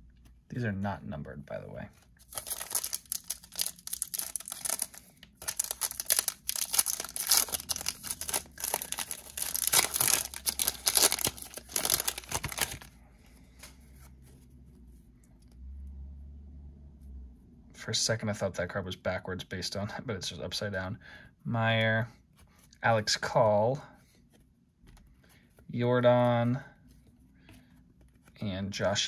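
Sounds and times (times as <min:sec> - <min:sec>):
cards being handled: 0:02.0 - 0:14.4, 0:22.4 - 0:28.5
foil wrapper tearing and crinkling: 0:02.3 - 0:12.9.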